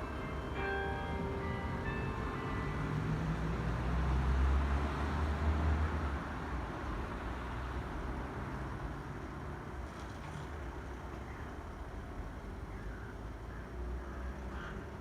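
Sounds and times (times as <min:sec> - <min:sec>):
vehicle rumbling past: 0:00.0 - 0:08.6
traffic hum: 0:00.0 - 0:15.0.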